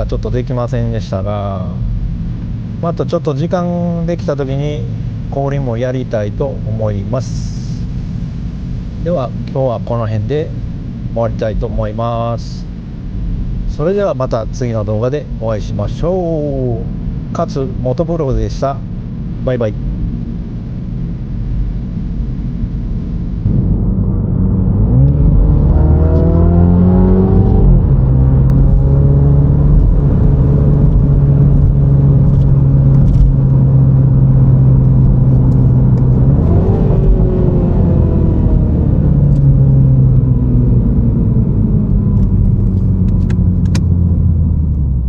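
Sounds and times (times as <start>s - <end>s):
car engine accelerating: 22.7s - 45.0s.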